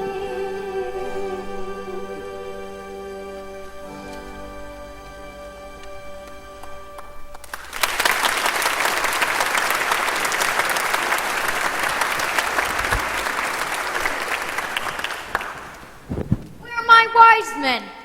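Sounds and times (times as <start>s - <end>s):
music: 0.0s - 7.5s
audience applauding: 7.0s - 16.1s.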